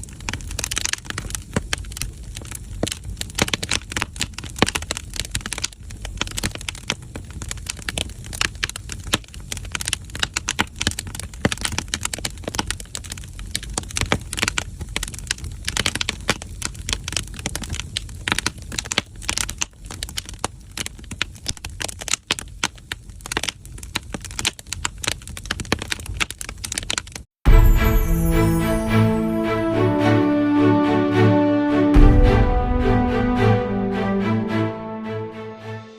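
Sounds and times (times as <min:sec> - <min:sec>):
firewood crackling and popping: 0:00.0 - 0:27.3
low rumble: 0:27.5 - 0:35.3.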